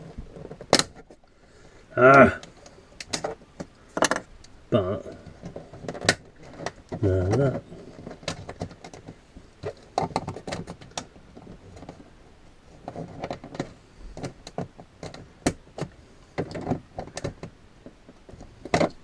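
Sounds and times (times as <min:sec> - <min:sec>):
plastic scraping: 0:02.0 - 0:19.0
plastic conduit clicking and knocking: 0:05.1 - 0:12.0, 0:12.8 - 0:19.0.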